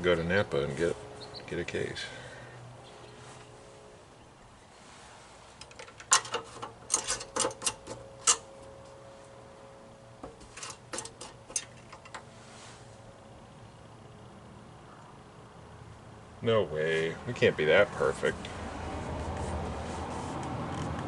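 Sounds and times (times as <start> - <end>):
sharp clicks and light knocks: 5.6 - 9.0, 10.2 - 12.3.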